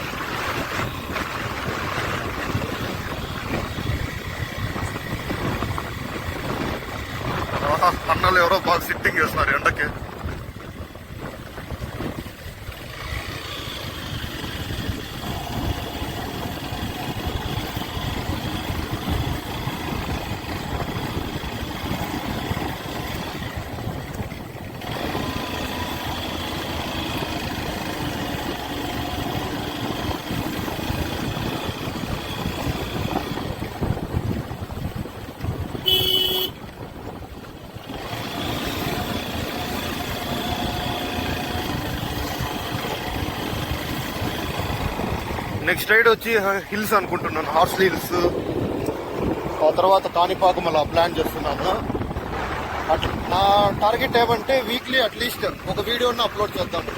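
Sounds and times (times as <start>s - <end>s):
motorcycle engine running: 0.0s - 56.9s
horn toot: 35.7s - 36.7s.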